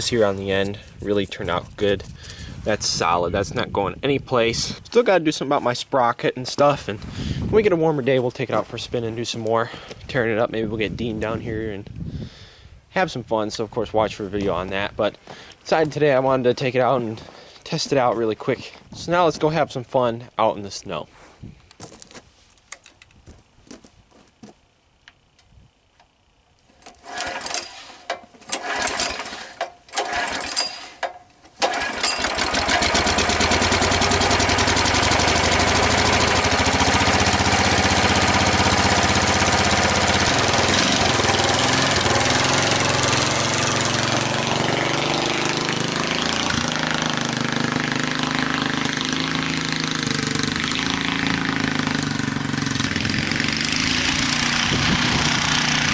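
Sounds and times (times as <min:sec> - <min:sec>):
quiet scuffs and knocks: 0:21.1 - 0:24.7
go-kart engine running: 0:27.0 - 0:30.9, 0:31.6 - 0:55.9.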